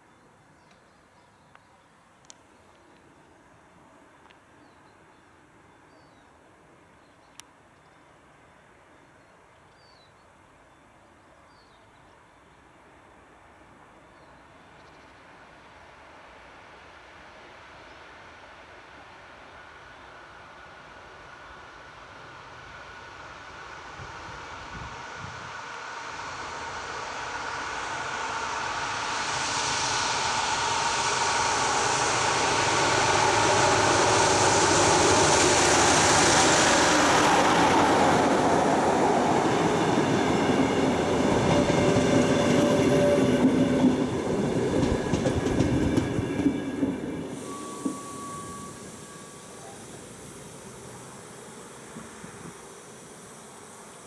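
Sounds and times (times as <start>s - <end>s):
diesel locomotive running: 19.7s - 54.0s
train brakes squealing: 23.6s - 54.0s
train wheels clattering over joints: 39.6s - 48.1s.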